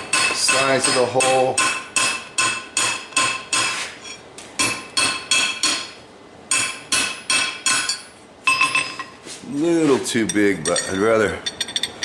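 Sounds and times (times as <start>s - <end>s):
hammer striking steel on anvil: 0.0s - 9.1s.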